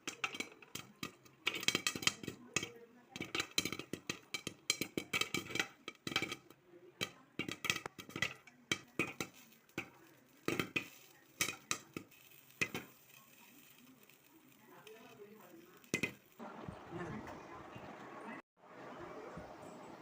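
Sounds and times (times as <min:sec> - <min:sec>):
popcorn popping: 0:00.0 - 0:16.4.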